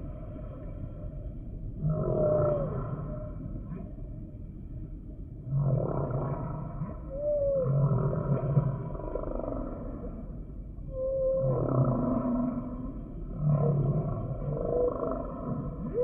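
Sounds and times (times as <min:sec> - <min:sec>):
whale low moaning: 0:00.0 - 0:16.0
whale higher-pitched calls: 0:01.9 - 0:03.4.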